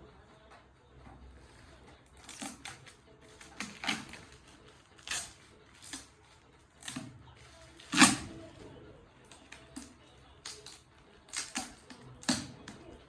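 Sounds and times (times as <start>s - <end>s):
wrapping paper tearing and crinkling: 2.2s - 8.5s, 9.3s - 12.8s.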